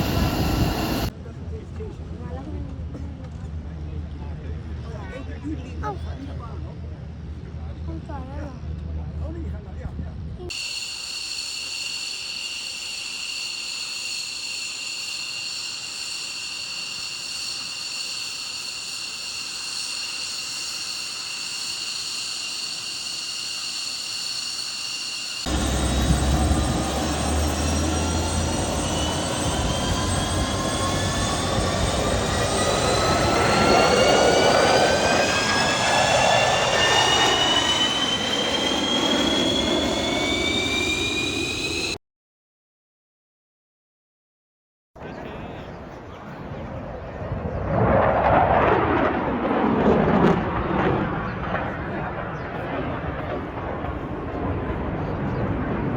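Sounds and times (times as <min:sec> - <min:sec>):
jet engine roar: 0:00.0 - 0:01.2, 0:10.5 - 0:42.0, 0:45.0 - 0:55.9
jet engine high-pitched whine: 0:00.0 - 0:42.0, 0:45.0 - 0:55.9.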